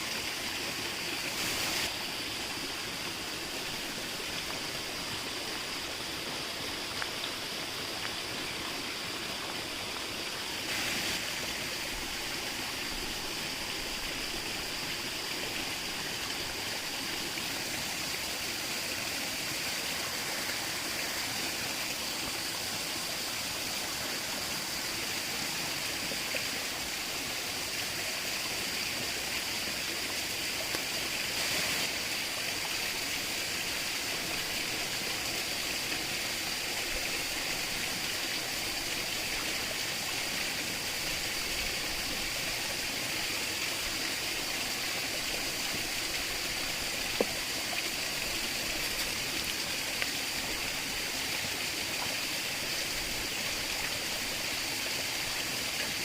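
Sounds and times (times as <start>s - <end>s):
stream rushing: 0.0s - 56.0s.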